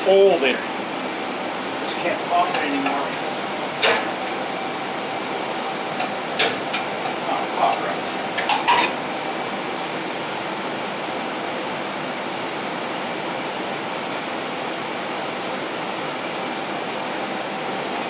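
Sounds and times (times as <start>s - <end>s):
oil burner rushing: 0.0s - 18.0s.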